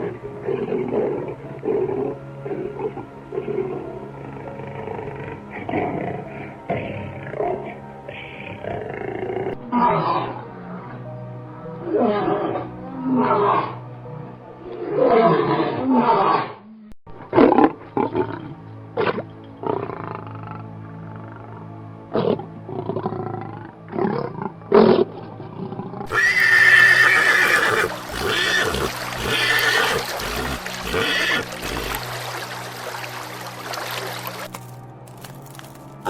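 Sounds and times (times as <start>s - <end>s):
background music: 0.0s - 16.6s, 17.2s - 36.0s
animal calls: 26.1s - 32.0s.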